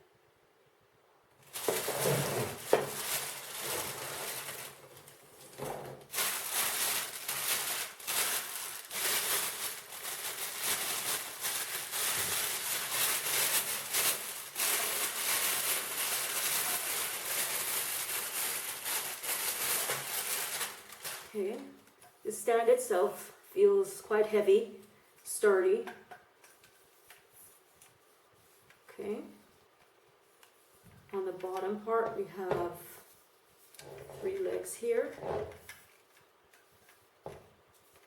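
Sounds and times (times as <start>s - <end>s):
packaging crinkling and rustling: 1.4s - 22.0s.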